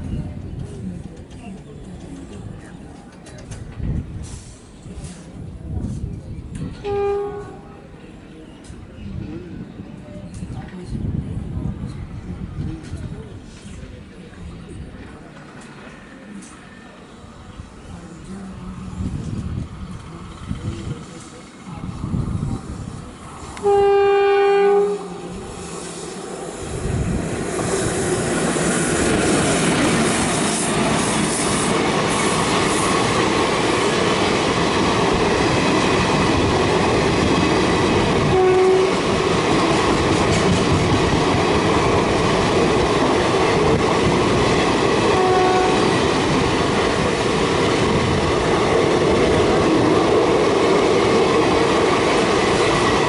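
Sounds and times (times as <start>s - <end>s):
train coaches rattling over rails: 0.0s - 53.0s
locomotive horn: 6.8s - 7.7s, 23.6s - 25.2s, 38.3s - 39.1s, 45.1s - 46.0s.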